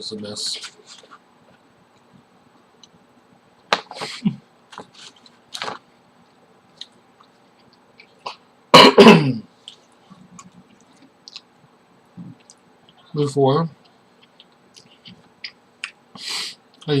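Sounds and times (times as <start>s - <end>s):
person eating: 9.6s - 11.6s.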